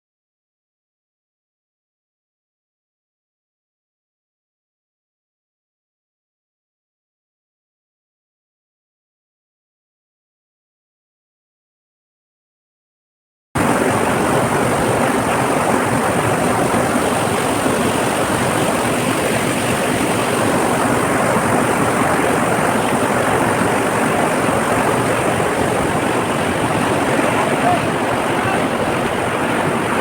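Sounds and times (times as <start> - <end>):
waterfall rushing: 13.6 - 30.0.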